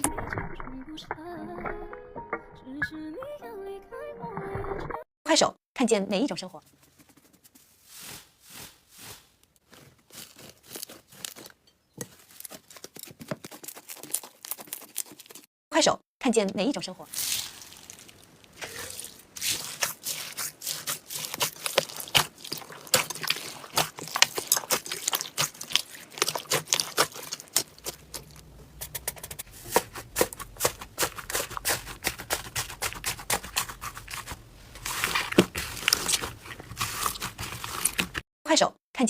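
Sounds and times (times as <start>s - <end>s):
slime crackling and popping: 17.1s - 29.1s, 29.8s - 38.2s.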